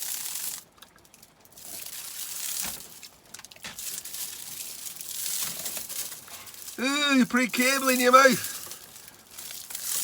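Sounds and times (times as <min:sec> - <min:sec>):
plastic jacket tearing: 0:09.4 - 0:10.0.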